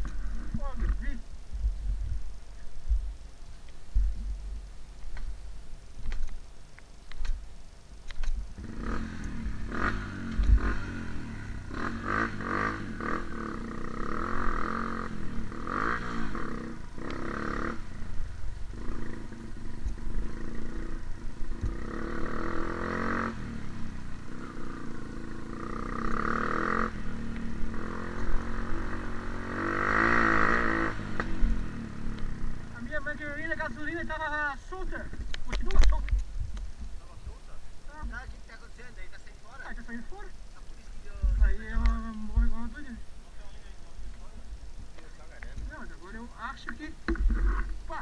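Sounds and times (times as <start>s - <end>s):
motorcycle engine revving: 0.0s - 1.8s, 8.3s - 36.1s, 41.0s - 48.0s.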